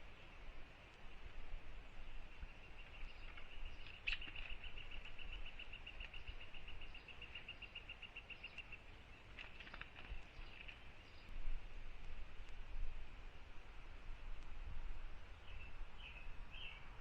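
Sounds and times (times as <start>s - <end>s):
faint clicks: 2.9s - 6.5s, 8.4s - 11.3s.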